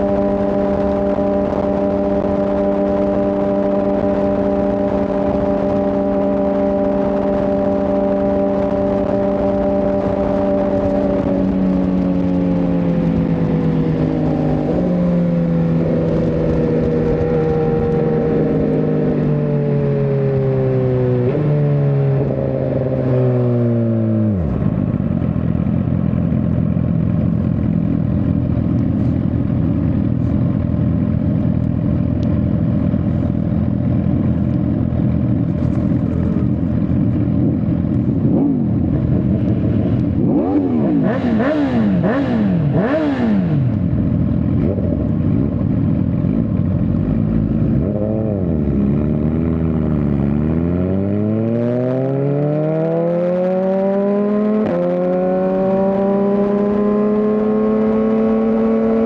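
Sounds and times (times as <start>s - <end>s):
motorcycle engine downshifting and idling: 0.0s - 59.0s.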